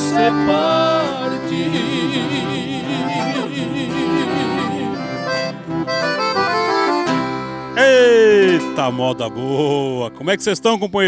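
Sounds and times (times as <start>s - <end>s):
two voices singing in harmony: 0.0s - 7.0s
accordion: 0.0s - 11.0s
instrumental phrase: 0.0s - 11.0s.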